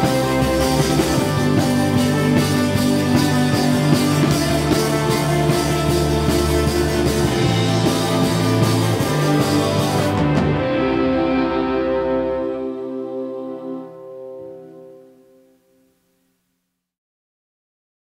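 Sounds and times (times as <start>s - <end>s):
drum kit beat: 0.0s - 12.2s
guitar chords: 0.0s - 16.3s.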